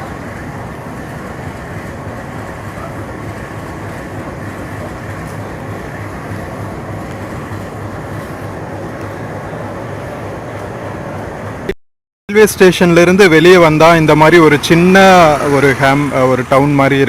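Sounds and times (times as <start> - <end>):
locomotive idling rumble: 0.0 - 11.7.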